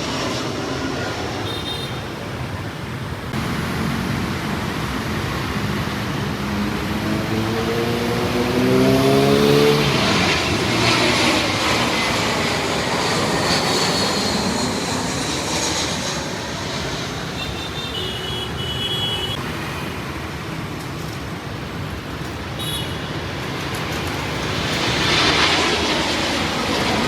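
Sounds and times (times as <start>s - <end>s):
jet airliner roar: 0.0s - 27.0s
jet engine high whine: 0.0s - 27.0s
smaller engine rising in pitch: 6.4s - 16.2s.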